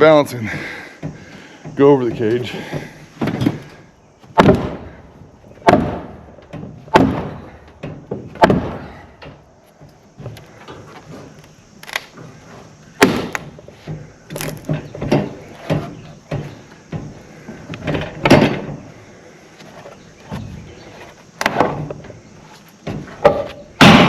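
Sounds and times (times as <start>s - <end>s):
hammer striking wood: 4.4s - 4.8s, 5.6s - 7.4s, 8.1s - 8.8s.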